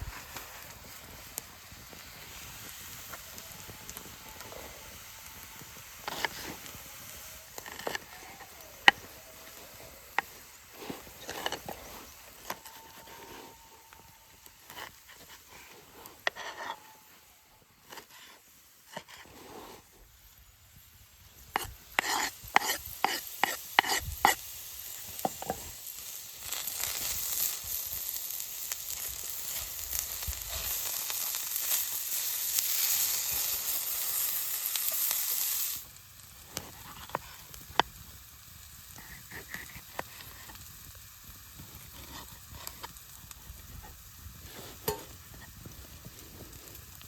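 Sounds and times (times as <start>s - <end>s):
food sizzling in a pan: 0.0s - 47.0s
utensil scraping a pan: 6.0s - 17.1s, 17.8s - 19.9s, 21.6s - 24.5s, 41.7s - 43.0s, 44.4s - 45.6s.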